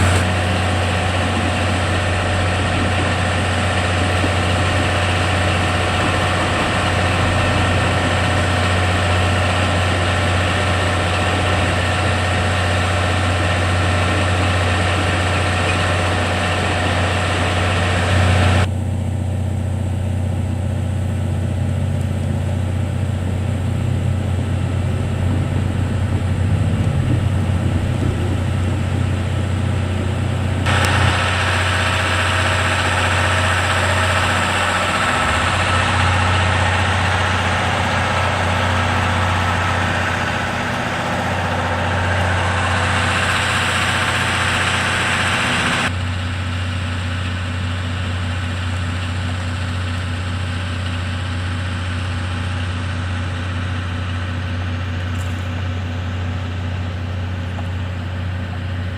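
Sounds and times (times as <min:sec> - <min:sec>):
steam locomotive low hum: 0:00.0 - 0:58.9
loud steam hiss: 0:30.7 - 0:45.9.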